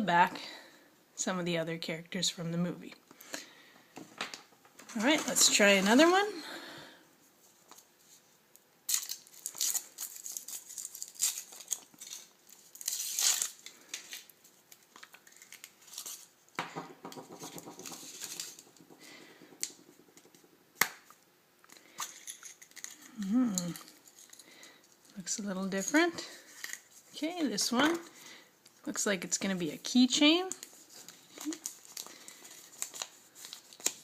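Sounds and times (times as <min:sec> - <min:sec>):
foil wrapper crinkling and tearing: 0:08.9 - 0:16.4, 0:21.7 - 0:25.2, 0:26.4 - 0:27.8, 0:30.5 - 0:34.0.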